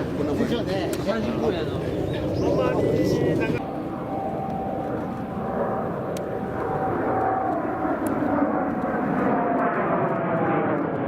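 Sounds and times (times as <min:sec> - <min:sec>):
jet aircraft passing: 0:00.0 - 0:11.0.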